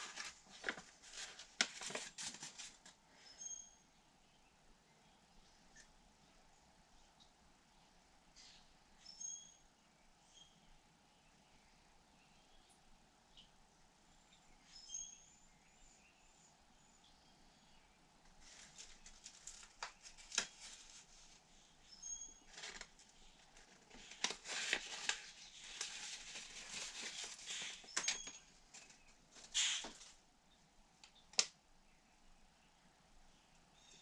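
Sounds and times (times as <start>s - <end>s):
bird chirping faintly: 3.1s - 24.6s.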